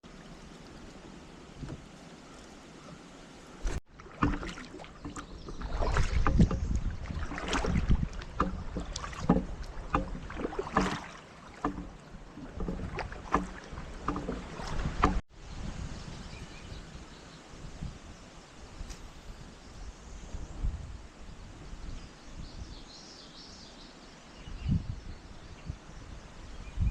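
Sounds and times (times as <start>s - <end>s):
water splashing: 0.0s - 15.2s
knocks against kayak hull: 3.6s - 15.2s.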